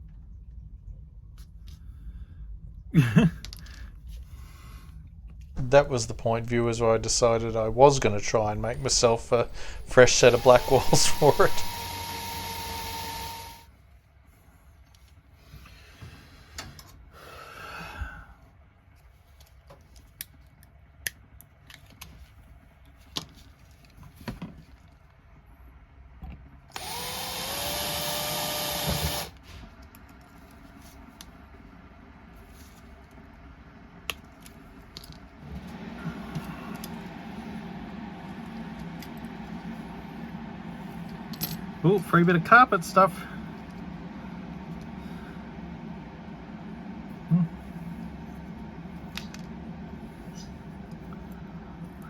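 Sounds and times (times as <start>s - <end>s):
steady low hum: 0.0s - 18.8s, 26.8s - 52.0s
small electric drill running: 9.4s - 13.7s, 26.7s - 29.4s.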